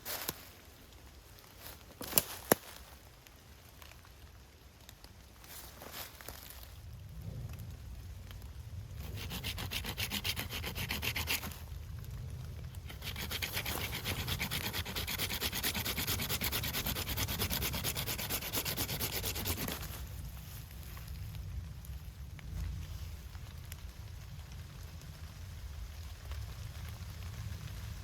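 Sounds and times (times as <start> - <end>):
hand saw cutting wood: 9.0 - 11.6, 12.9 - 20.0.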